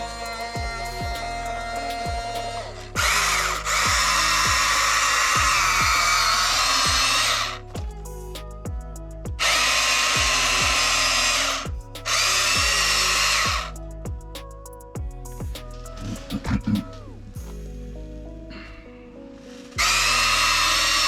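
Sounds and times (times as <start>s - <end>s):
electric motors whirring: 0.0s - 7.5s
background music with steady beat: 0.0s - 21.0s.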